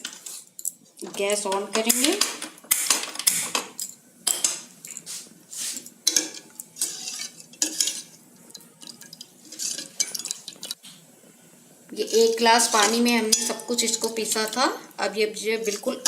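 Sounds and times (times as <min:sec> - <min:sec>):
utensil scraping a cooking pan: 0:05.0 - 0:10.8, 0:12.0 - 0:14.8.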